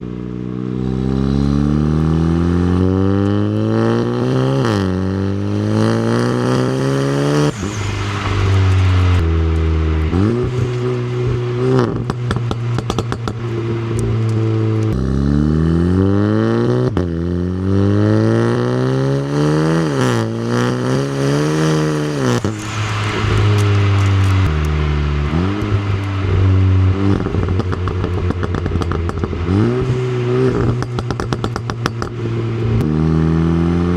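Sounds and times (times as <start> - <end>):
car engine revving through gears: 0.6 - 33.9
exhaust crackles and pops: 3.2 - 16.0, 19.3 - 33.2.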